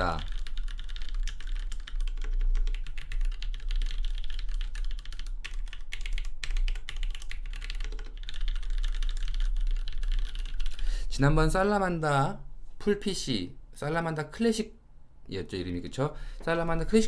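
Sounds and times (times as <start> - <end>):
fast typing on keyboard: 0.0 - 10.8.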